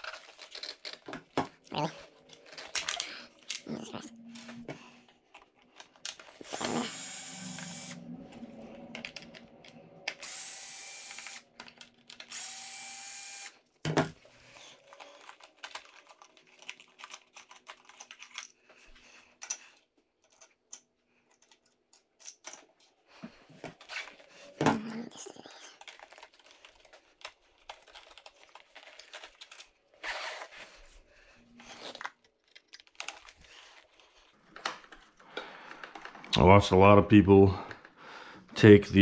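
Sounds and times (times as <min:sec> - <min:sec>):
power screwdriver whirring: 0:06.4 - 0:08.0, 0:10.1 - 0:11.5, 0:12.1 - 0:13.6
small clicks and taps of parts: 0:19.4 - 0:22.9.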